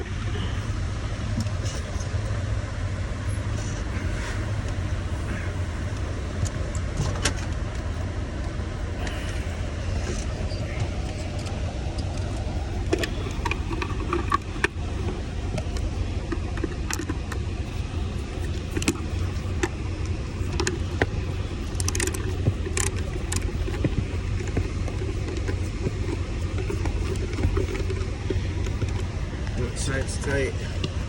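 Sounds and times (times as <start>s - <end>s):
low engine drone: 0.0s - 31.0s
clicks and taps of plastic parts: 18.5s - 29.6s.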